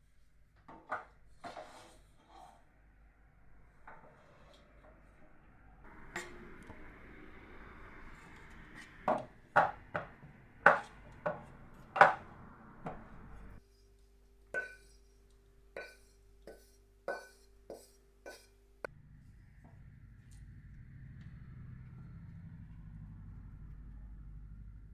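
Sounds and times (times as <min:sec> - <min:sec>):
utensils clinking against dishes: 0:05.9 - 0:06.9, 0:14.6 - 0:15.2.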